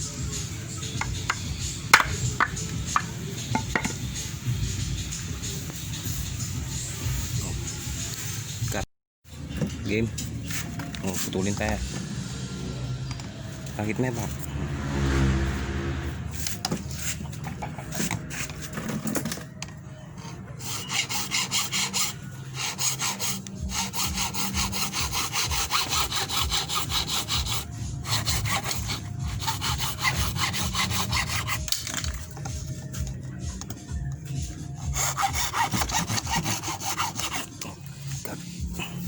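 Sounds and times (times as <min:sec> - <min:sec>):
hand saw cutting: 0:20.6 - 0:32.4, 0:34.8 - 0:37.8.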